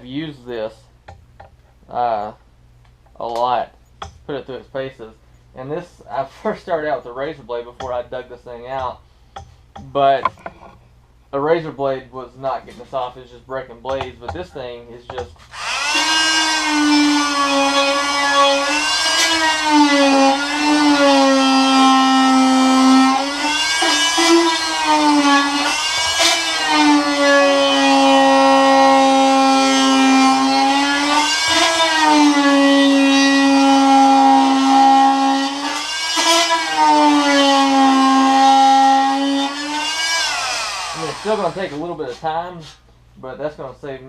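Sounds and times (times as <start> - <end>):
oscillating multi-tool buzzing whine: 15.5 - 28.1, 39.4 - 41.6.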